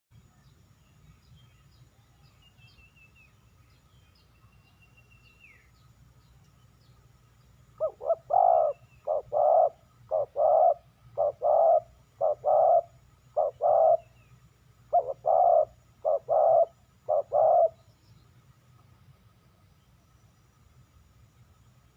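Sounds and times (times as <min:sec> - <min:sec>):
dove cooing: 0:07.8 - 0:14.2, 0:14.8 - 0:17.8.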